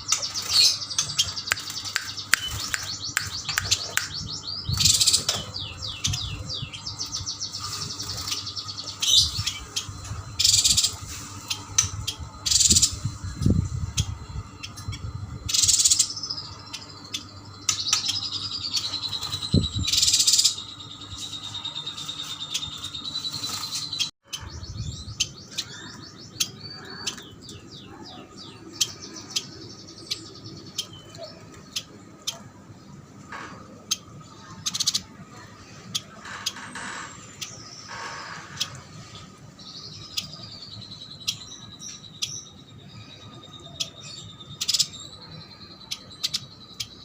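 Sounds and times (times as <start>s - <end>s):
birds chirping and calling: 0.0s - 47.0s.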